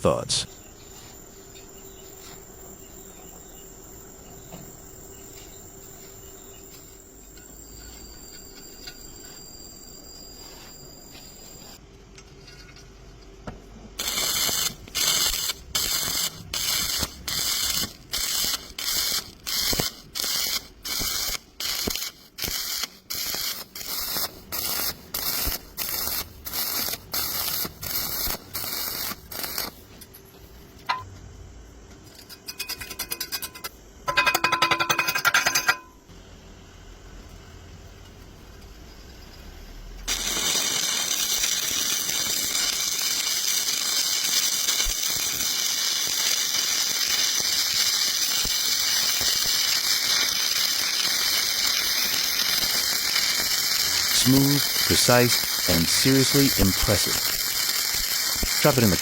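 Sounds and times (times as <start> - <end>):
welding arc crackling hiss: 0.0 - 11.8, 14.0 - 31.1, 38.2 - 59.0.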